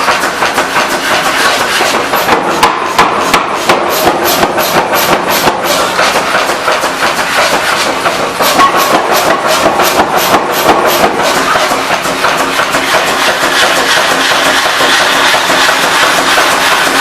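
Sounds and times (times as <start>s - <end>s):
machinery humming: 0.0s - 17.0s.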